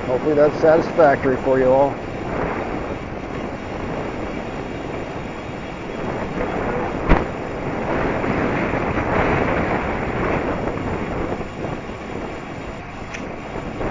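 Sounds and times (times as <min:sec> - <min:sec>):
wind rushing over microphone: 0:00.0 - 0:13.9
sharp click: 0:13.1 - 0:13.3.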